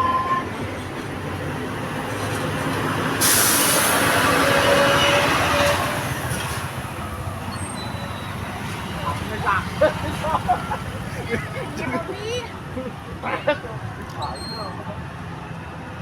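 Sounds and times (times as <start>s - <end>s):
bus engine running: 0.0s - 16.0s
air brakes hissing: 3.2s - 5.0s.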